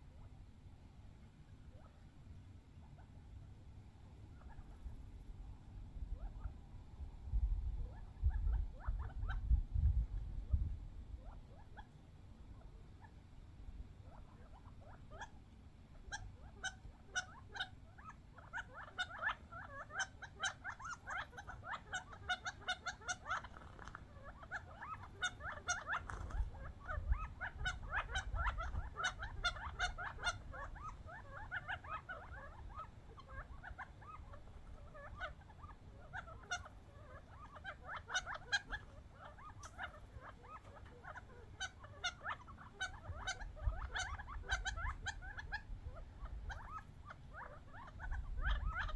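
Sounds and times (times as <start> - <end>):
quail chattering and clucking: 3.9 - 6.6, 7.4 - 48.9.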